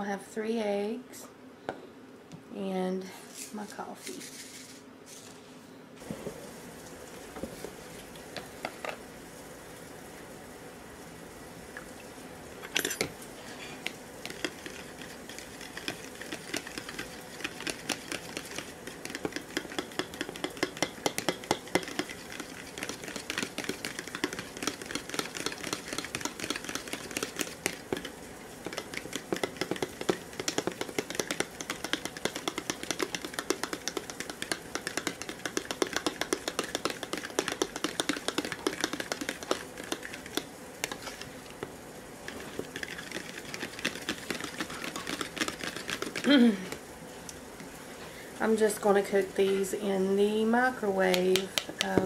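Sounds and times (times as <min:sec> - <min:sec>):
utensil clicking against bowl: 0:13.8 - 0:41.0.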